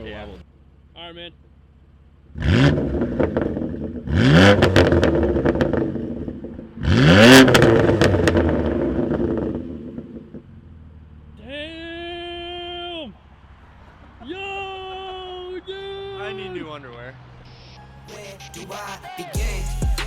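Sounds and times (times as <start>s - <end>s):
car engine revving: 0.0s - 11.5s
exhaust pops and burbles: 2.2s - 10.5s.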